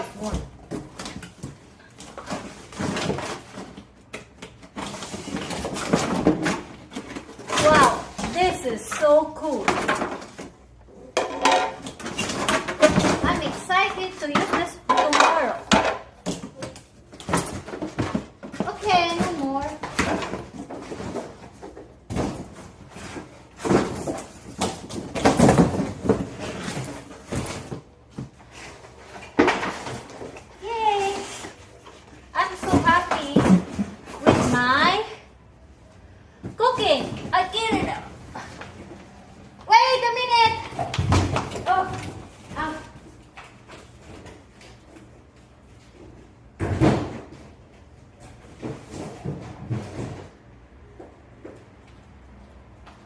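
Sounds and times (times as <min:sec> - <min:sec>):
boxes and packaging being handled: 0:00.0 - 0:52.8
rustling and scraping: 0:00.1 - 0:15.8, 0:16.4 - 0:34.7
pots knocking and clicking: 0:11.1 - 0:13.4, 0:14.3 - 0:21.1.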